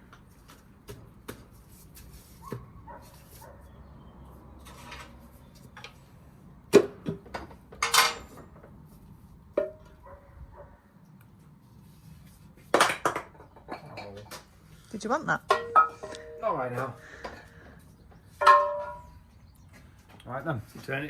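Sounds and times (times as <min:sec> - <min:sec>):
metal tools clinking: 0:07.8 - 0:08.5.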